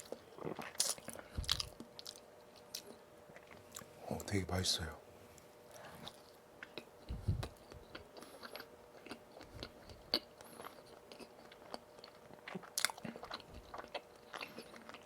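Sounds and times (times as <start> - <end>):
chewing: 0.0 - 3.9, 5.4 - 15.0.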